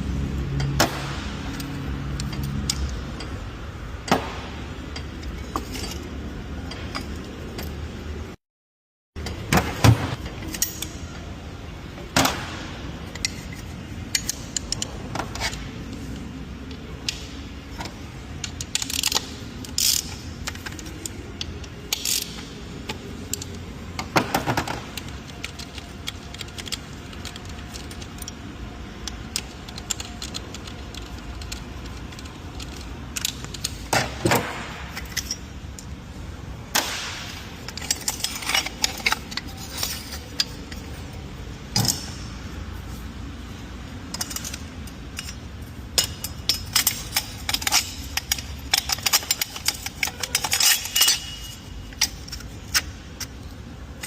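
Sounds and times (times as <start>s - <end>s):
low background hum: 0.0s - 8.4s, 9.2s - 54.0s
metal tools clinking: 4.9s - 7.8s, 17.1s - 35.9s, 36.8s - 43.0s, 44.0s - 53.5s.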